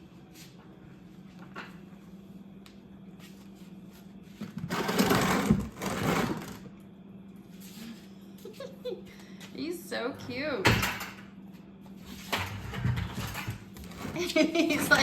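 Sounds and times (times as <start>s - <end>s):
objects scraping across floor: 3.2s - 6.7s, 12.0s - 15.0s.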